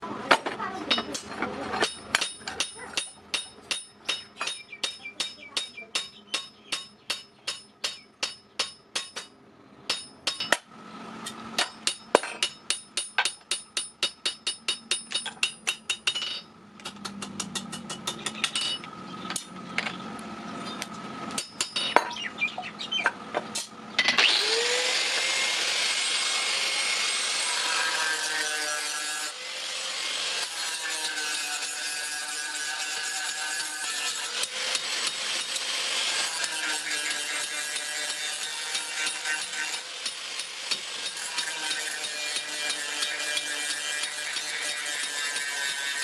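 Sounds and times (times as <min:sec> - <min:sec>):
hammer ringing on steel plate: 0:01.8 - 0:10.6
power grinder against steel: 0:23.6 - 0:46.0.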